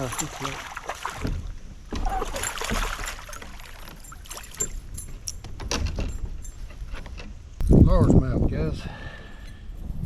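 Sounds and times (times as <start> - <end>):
water splashing against kayak: 0.0 - 4.7.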